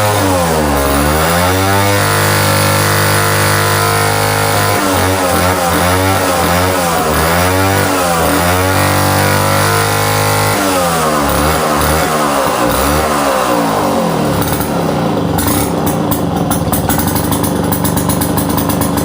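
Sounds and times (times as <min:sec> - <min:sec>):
chainsaw engine running: 0:00.0 - 0:19.0.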